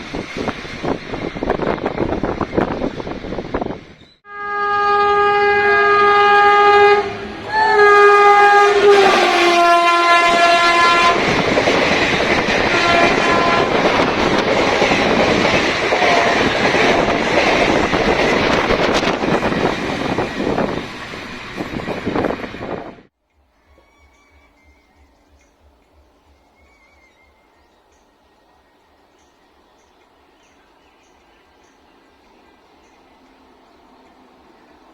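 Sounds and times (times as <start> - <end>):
train wheel and track noise: 0.0 - 4.3, 5.5 - 34.9
train horn blasts: 4.2 - 11.5, 12.4 - 14.2, 16.0 - 16.7.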